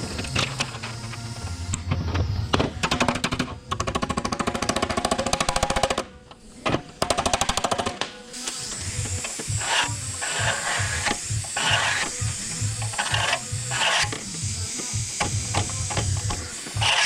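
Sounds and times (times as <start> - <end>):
background music: 0.0 - 17.0
power tool rattling: 9.0 - 17.0.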